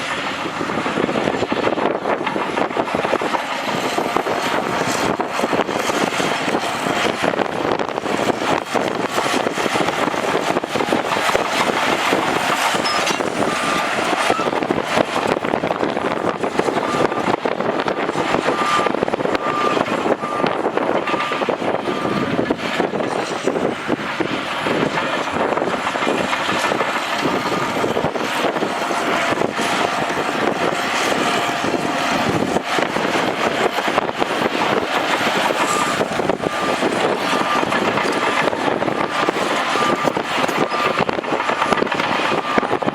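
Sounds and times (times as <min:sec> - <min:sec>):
diesel engine under load: 0:00.0 - 0:42.9
reversing alarm beeping: 0:11.2 - 0:15.3, 0:16.5 - 0:42.9.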